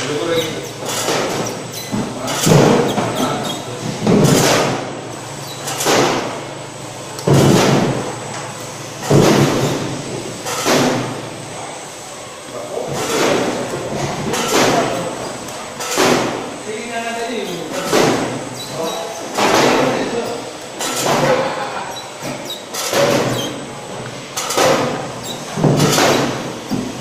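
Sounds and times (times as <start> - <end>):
labeling machine clunking: 17.3 - 27.0.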